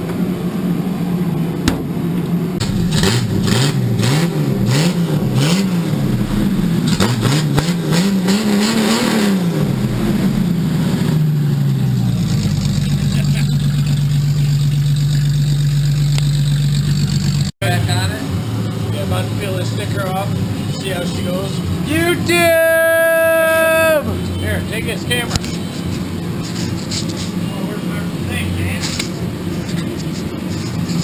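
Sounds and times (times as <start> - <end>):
car engine revving and idling: 0.2 - 22.3.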